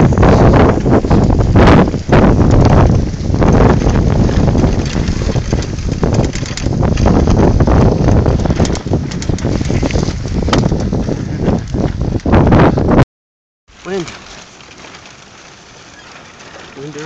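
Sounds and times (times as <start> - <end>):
wind buffeting microphone: 0.0 - 13.0
sharp clicks and ticks: 0.7 - 10.8.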